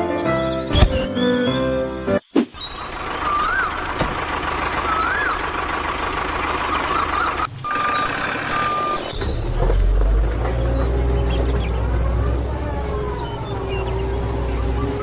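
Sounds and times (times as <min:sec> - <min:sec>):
reversing beeper beeps: 0:06.7 - 0:09.6.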